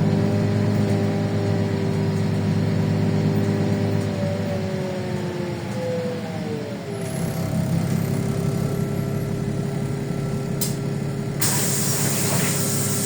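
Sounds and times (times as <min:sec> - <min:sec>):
bus drivetrain whine: 0:00.0 - 0:13.0
air brake hiss: 0:11.4 - 0:13.0.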